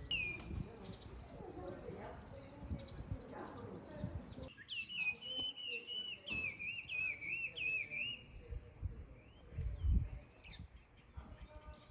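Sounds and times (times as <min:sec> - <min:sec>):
songbird warbling: 0:00.0 - 0:01.4
low rumbles on microphone: 0:08.4 - 0:11.9.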